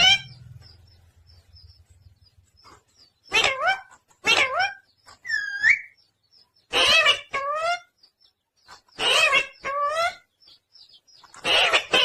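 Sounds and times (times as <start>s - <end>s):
parrot squawking: 0.0s - 0.4s, 3.3s - 6.0s, 6.7s - 7.9s, 9.0s - 10.3s, 11.3s - 12.0s
parrot whistle-like chirp: 5.3s - 6.0s.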